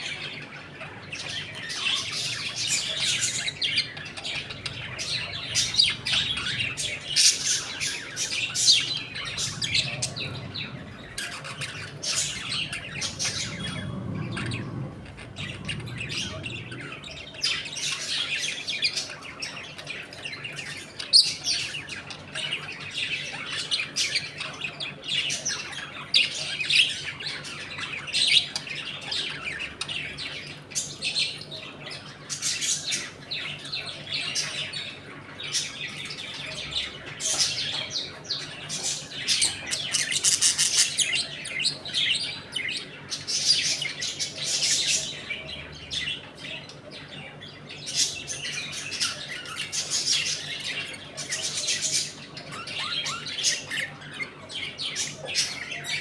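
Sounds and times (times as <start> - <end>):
budgerigars chirping and squawking: 0.0 - 56.0.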